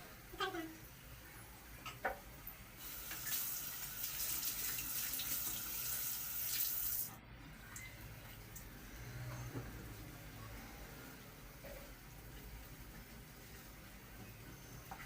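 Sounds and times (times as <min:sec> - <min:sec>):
water running from a tap: 0:02.8 - 0:07.1.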